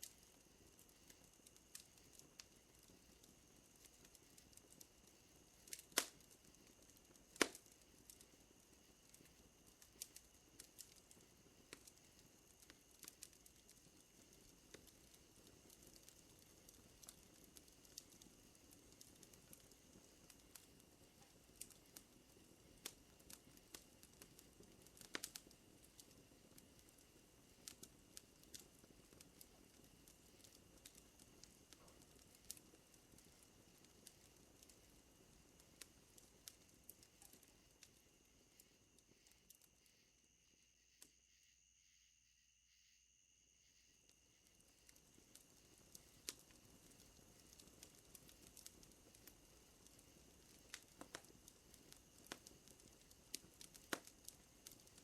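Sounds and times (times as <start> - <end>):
wood fire crackling and popping: 0.0 - 40.0, 44.1 - 55.0
night insects humming: 37.1 - 48.2.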